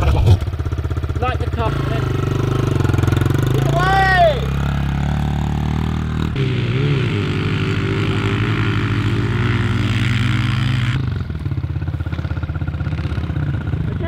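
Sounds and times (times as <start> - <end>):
motocross bike engine: 0.0 - 14.0.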